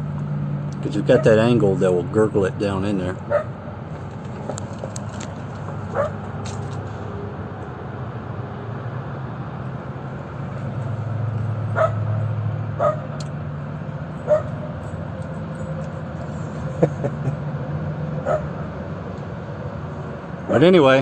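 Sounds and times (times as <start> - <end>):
dog barking: 3.3 - 3.6, 5.9 - 6.2, 11.7 - 12.2, 12.8 - 13.2, 14.2 - 14.6, 18.2 - 18.6.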